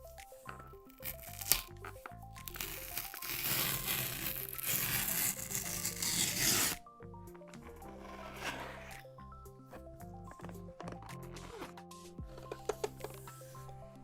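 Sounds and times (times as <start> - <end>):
background music: 0.0 - 14.0
cardboard packaging tearing: 1.0 - 1.7, 2.4 - 6.8.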